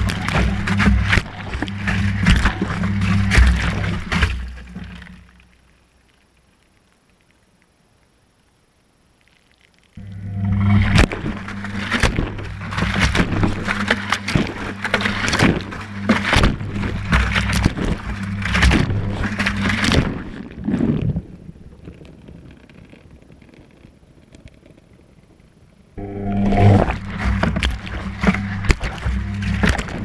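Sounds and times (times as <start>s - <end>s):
washing machine motor hum: 10.0s - 19.9s, 26.0s - 30.0s.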